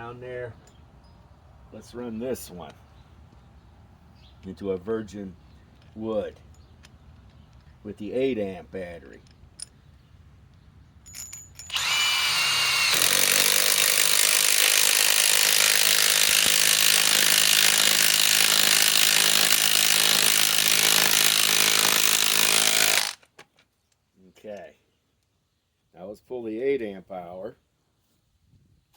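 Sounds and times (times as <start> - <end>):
impact wrench hammering: 12.8 - 23.2.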